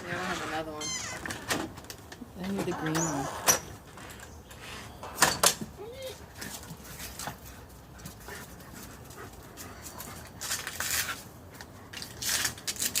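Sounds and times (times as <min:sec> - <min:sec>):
dog panting: 0:06.2 - 0:10.4.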